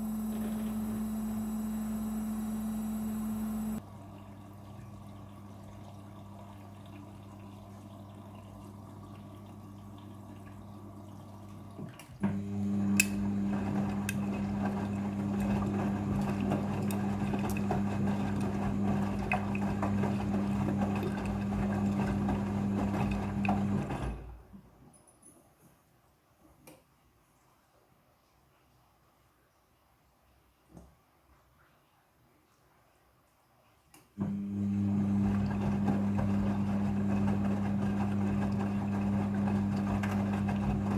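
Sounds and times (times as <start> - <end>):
electric hum: 0.0 - 3.8
water flowing: 0.0 - 21.5
washing machine running: 0.0 - 24.5, 34.2 - 40.9.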